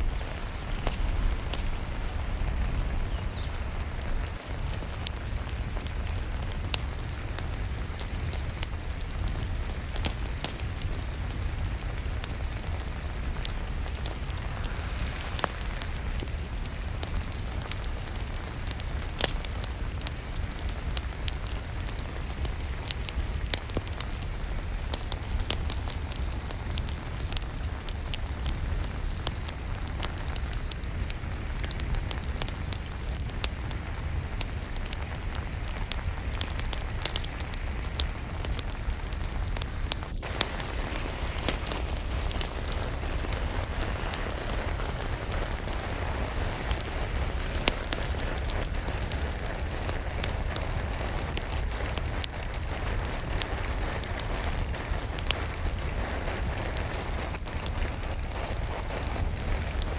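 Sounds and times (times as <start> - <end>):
steady rainfall: 0.0 - 59.9
wood fire crackling and popping: 0.0 - 59.9
low rumble: 11.4 - 19.1.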